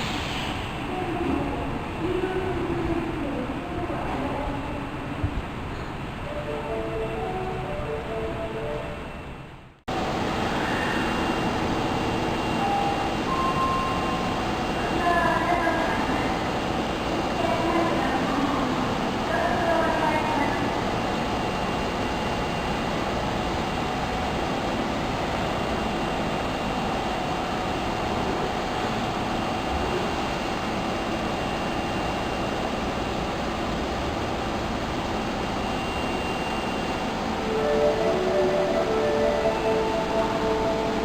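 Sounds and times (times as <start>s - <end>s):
subway train rumbling: 0.0s - 41.0s
steady tones: 35.6s - 41.0s.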